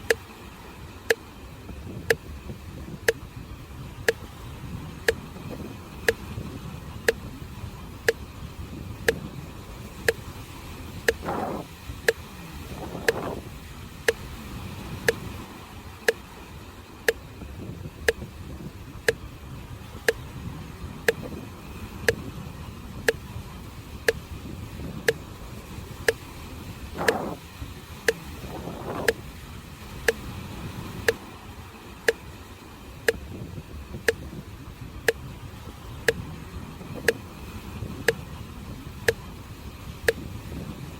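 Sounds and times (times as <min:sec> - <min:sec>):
sharp even ticking: 0:02.9 - 0:03.3, 0:04.0 - 0:07.3, 0:08.0 - 0:08.4, 0:09.0 - 0:09.4, 0:10.0 - 0:10.3, 0:11.0 - 0:15.4, 0:17.0 - 0:17.4, 0:18.0 - 0:18.4, 0:19.0 - 0:19.3, 0:19.9 - 0:20.4, 0:21.0 - 0:21.4, 0:23.0 - 0:23.3, 0:24.0 - 0:24.3, 0:25.0 - 0:25.4, 0:26.0 - 0:29.3, 0:30.0 - 0:30.4, 0:33.0 - 0:33.4, 0:34.0 - 0:34.4, 0:35.0 - 0:35.4, 0:36.0 - 0:37.3
sea waves rushing: 0:09.6 - 0:17.0.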